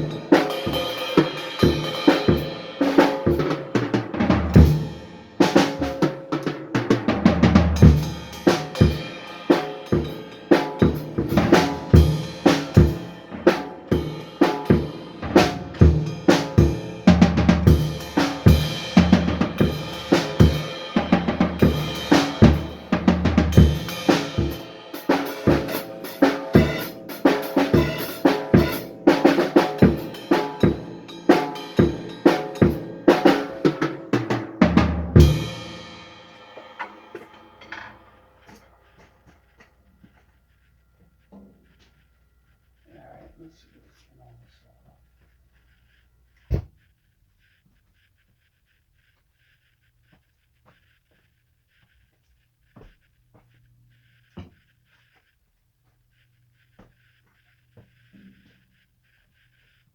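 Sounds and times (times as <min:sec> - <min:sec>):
drum kit playing a groove: 0:00.0 - 0:39.6
bass and other instruments: 0:10.9 - 0:24.6.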